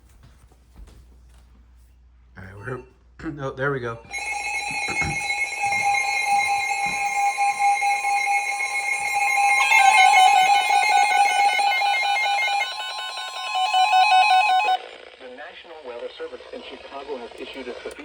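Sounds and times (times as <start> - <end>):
shrill alert tone pulsing beep: 4.1 - 14.8.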